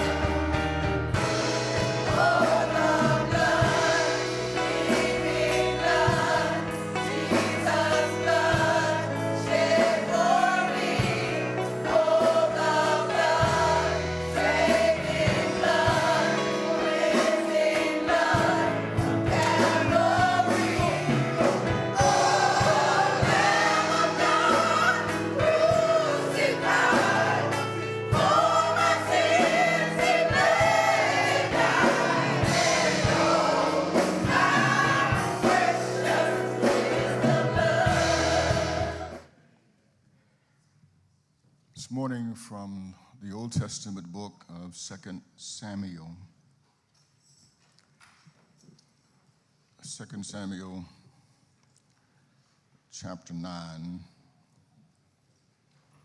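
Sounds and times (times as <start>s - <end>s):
instrumental accompaniment: 0.0s - 39.2s
gospel choir singing: 0.0s - 39.4s.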